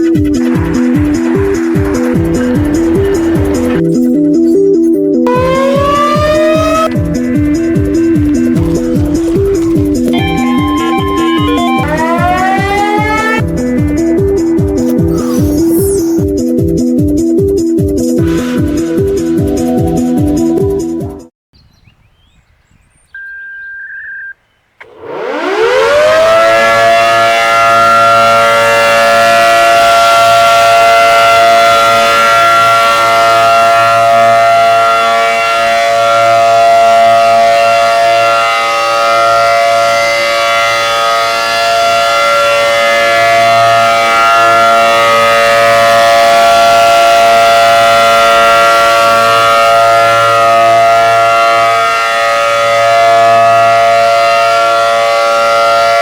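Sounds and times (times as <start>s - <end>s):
warning siren wailing: 0.0s - 14.0s, 14.8s - 16.3s, 24.8s - 56.0s.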